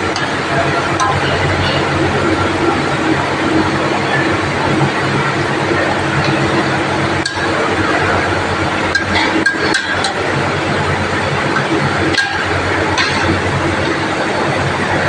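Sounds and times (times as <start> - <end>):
utensil clinking on cookware: 8.9 - 10.3, 12.1 - 13.4.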